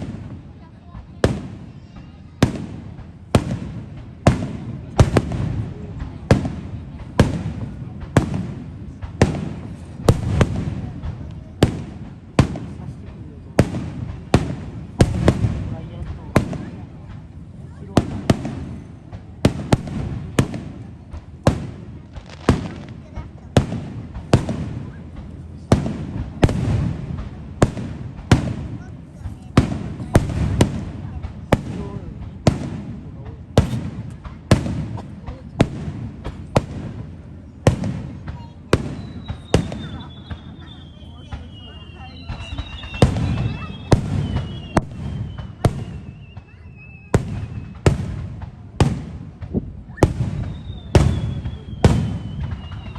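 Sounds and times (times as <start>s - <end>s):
fireworks bangs with echo: 0.0s - 52.9s.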